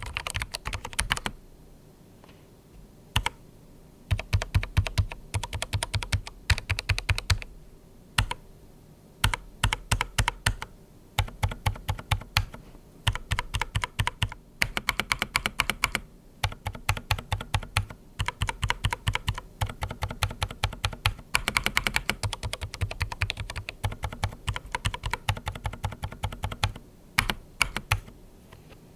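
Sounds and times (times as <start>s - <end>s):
fast typing on mechanical keyboard: 0.0s - 1.4s, 3.2s - 3.4s, 4.1s - 7.5s, 8.2s - 8.4s, 9.2s - 28.1s.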